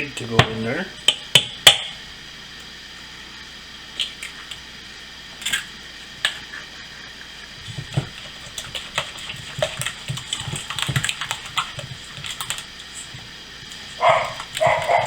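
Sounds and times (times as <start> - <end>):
utensil tapping mixing bowl: 0.0 - 2.0, 7.6 - 15.0
wet stirring: 0.4 - 2.0, 3.9 - 15.0.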